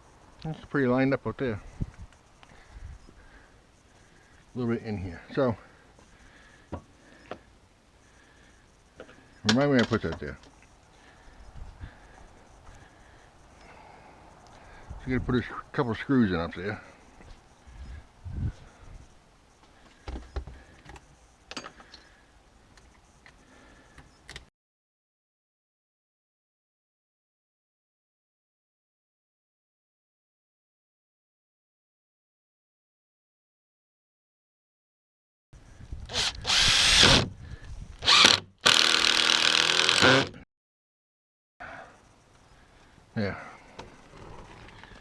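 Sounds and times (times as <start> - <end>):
power drill driving screws: 36.1 - 37.3, 38.0 - 40.4.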